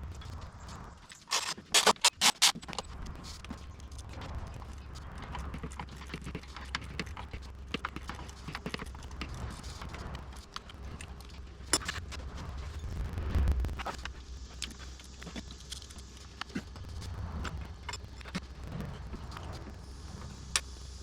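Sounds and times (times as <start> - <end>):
steady low hum: 0.0 - 21.0
hand tools clicking and tapping: 1.1 - 12.1.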